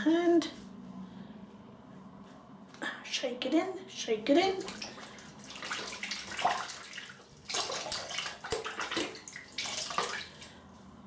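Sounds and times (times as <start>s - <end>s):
water splashing at a sink: 4.4s - 10.6s.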